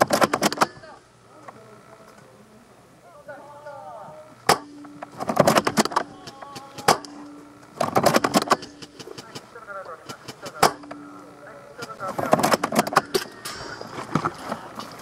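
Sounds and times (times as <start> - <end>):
airsoft guns firing: 0.0 - 0.9, 4.4 - 11.2, 11.8 - 13.6.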